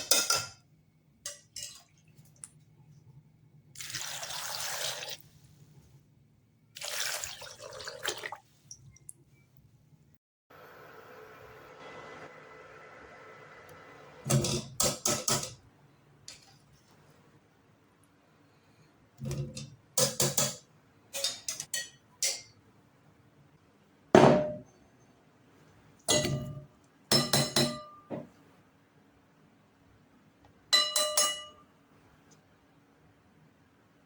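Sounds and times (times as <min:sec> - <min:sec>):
metal utensil clinking on pot: 0:19.3 - 0:22.6, 0:30.7 - 0:31.6.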